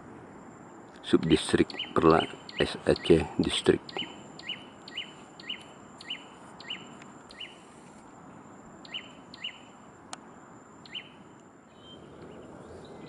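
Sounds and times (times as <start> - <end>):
outdoor hiss: 0.0 - 13.0
bird call notes: 1.3 - 7.7, 8.8 - 9.8, 10.8 - 13.0.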